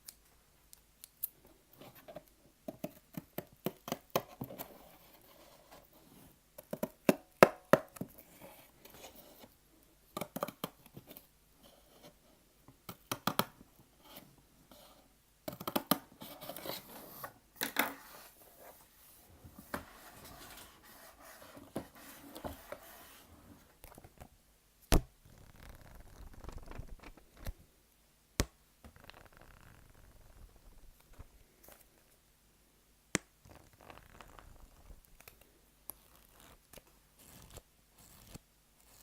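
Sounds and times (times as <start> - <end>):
soft rubbing and scratching: 4.5 - 6.4, 16.2 - 23.8.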